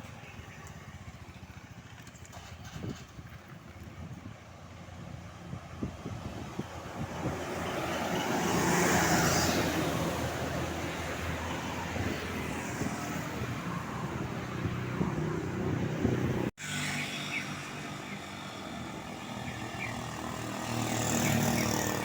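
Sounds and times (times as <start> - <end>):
vehicle passing close by: 5.0 - 22.0.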